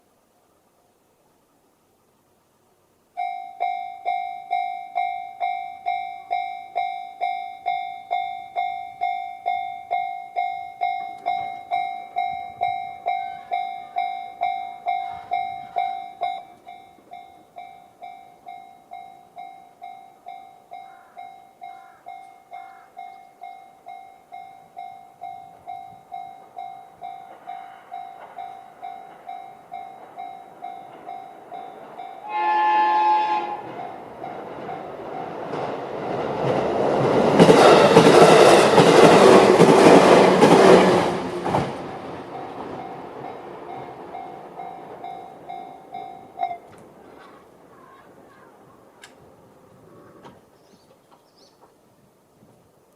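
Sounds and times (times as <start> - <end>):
approaching train: 0.0 - 52.9
level crossing bell dinging: 3.2 - 32.6, 42.3 - 46.8.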